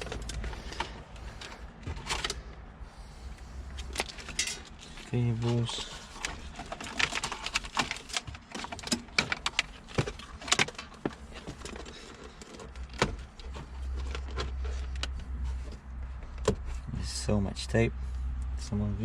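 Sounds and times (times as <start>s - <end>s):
low steady hum: 0.0s - 19.0s
plastic clicks and crackles: 6.1s - 15.3s.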